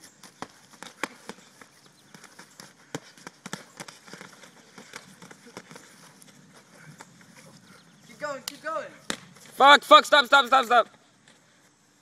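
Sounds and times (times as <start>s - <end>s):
punches landing: 0.2s - 5.9s.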